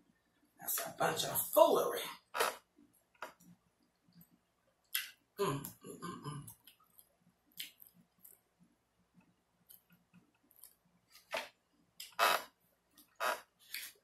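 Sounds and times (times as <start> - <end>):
wet chewing and lip smacking: 6.5 - 8.4.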